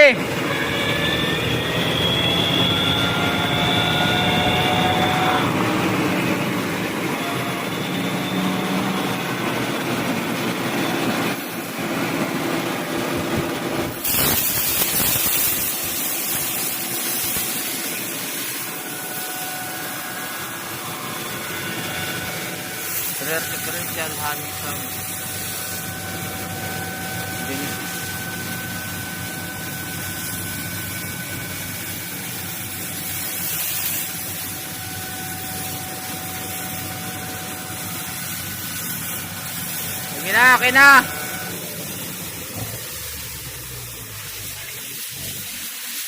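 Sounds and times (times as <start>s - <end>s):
car differential whining: 0.2s - 12.2s.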